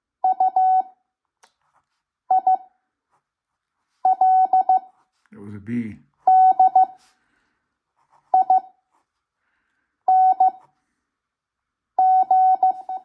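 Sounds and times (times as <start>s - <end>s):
morse code beeps: 0.2s - 1.0s, 2.3s - 2.7s, 4.0s - 4.9s, 6.3s - 7.0s, 8.3s - 8.8s, 10.1s - 10.7s, 12.0s - 13.0s.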